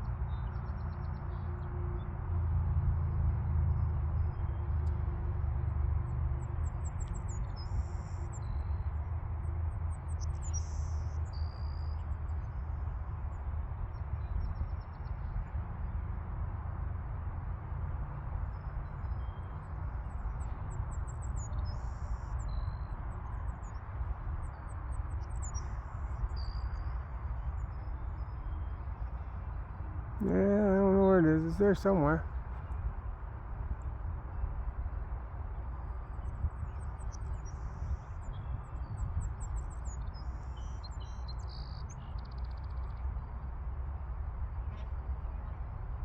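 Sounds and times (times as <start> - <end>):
songbird chirping: 30.2 - 32.7.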